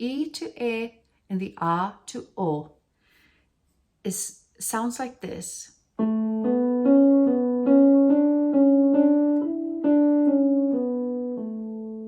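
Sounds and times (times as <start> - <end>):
piano single notes: 6.0 - 12.0.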